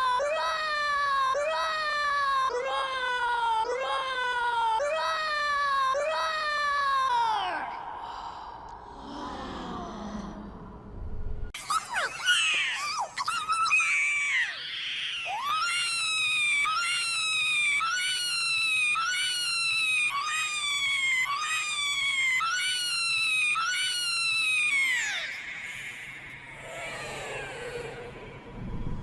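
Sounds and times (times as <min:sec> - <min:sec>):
pitch-shifted cartoon cry: 0:11.6 - 0:28.2.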